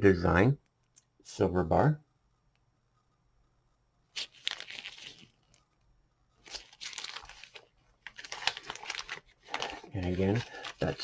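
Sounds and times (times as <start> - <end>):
packaging crinkling: 4.2 - 5.6, 6.4 - 11.0.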